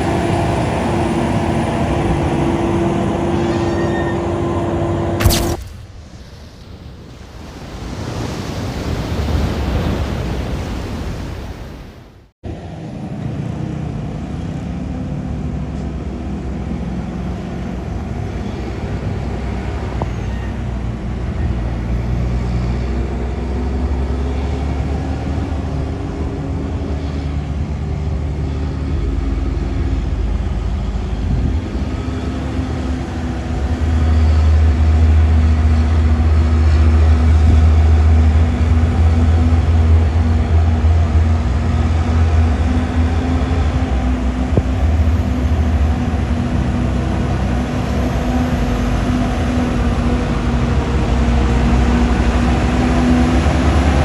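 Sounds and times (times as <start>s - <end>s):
truck diesel engine running: 0.0s - 6.0s, 20.8s - 54.0s.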